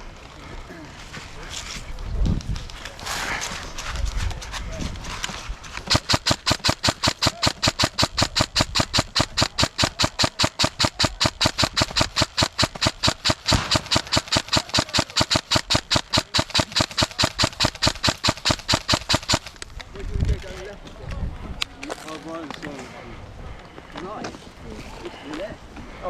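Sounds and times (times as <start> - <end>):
airsoft gun rapid firing: 5.9 - 19.6.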